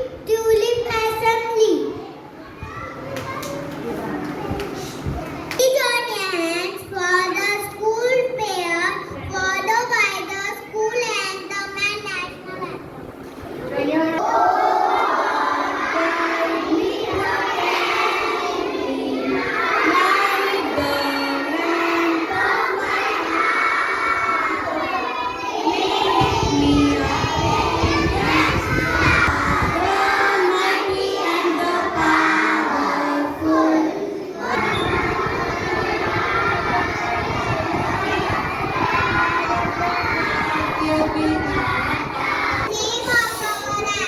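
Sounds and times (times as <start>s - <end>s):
children singing in unison: 14.1s - 42.7s.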